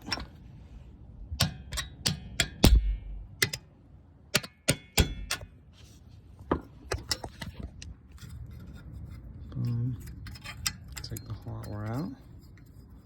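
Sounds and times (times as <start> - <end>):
loose metal parts clinking: 0.0 - 0.4, 6.6 - 13.0
hammer striking metal punch: 1.4 - 3.7, 4.3 - 5.5.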